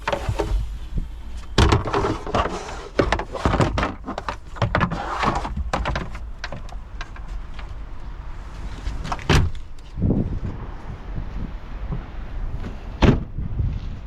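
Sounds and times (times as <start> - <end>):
steady low rumble: 0.0 - 12.6.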